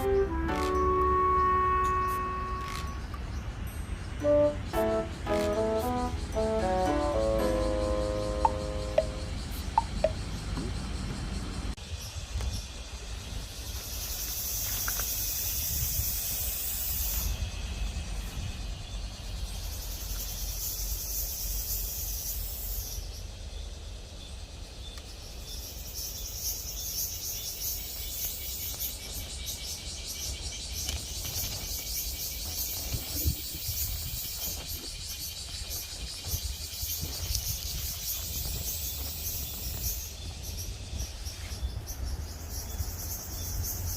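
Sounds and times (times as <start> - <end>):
insect buzzing: 0.0 - 3.1, 4.2 - 10.0
insect pulsing trill: 0.0 - 3.1, 4.2 - 10.3.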